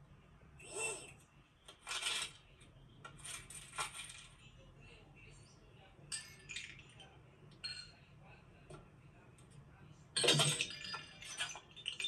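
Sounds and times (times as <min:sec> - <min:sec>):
metallic clinking and rattling: 0:01.7 - 0:02.5, 0:03.1 - 0:04.5.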